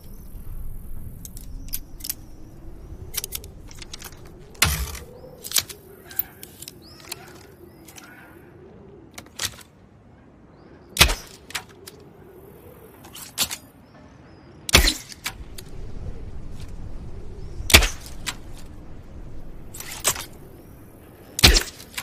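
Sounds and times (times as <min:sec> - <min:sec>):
low rumbling haze: 0:00.0 - 0:07.8, 0:14.0 - 0:22.0
faint clicks: 0:00.0 - 0:08.3.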